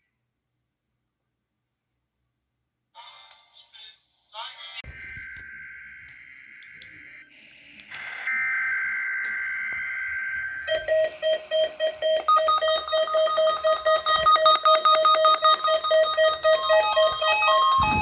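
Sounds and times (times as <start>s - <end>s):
buzzing data tone: 4.9s - 18.0s
higher electronic beeps: 4.9s - 18.0s
rapidly pulsing electronic beeps: 4.9s - 18.0s.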